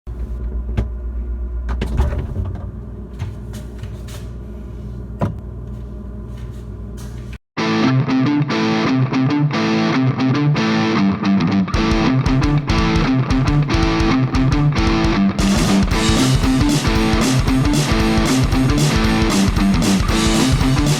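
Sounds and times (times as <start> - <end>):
distorted electric guitar rock: 7.6 - 20.9.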